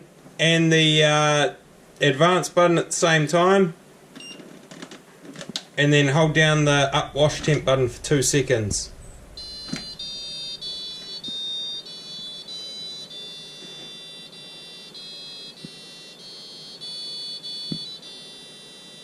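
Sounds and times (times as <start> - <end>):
electronic beeps playing a melody: 6.3 - 19.0.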